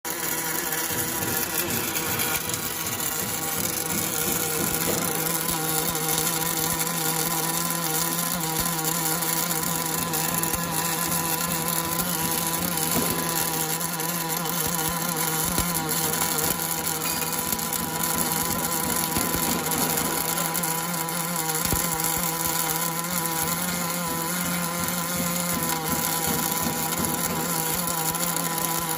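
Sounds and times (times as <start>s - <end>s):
welding machine hum: 0.0s - 28.9s
faint crackle: 0.1s - 28.9s
welding hiss: 0.1s - 28.9s.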